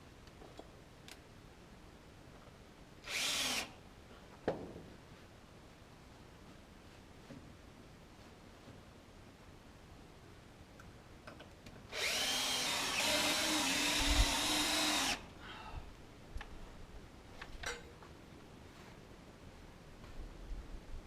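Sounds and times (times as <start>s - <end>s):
power drill running: 3.1s - 3.7s, 11.9s - 15.2s.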